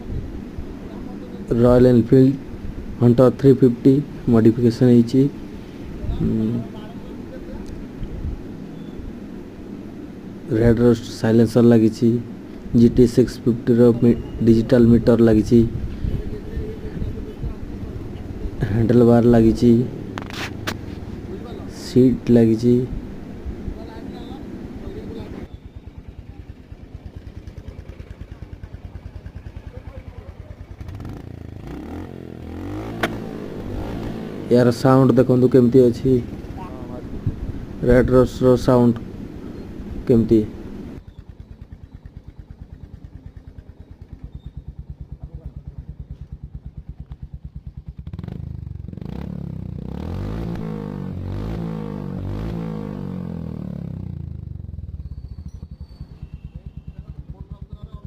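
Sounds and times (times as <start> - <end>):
motorcycle engine idling: 13.8 - 20.2, 23.0 - 37.7, 40.5 - 49.9, 53.0 - 58.0.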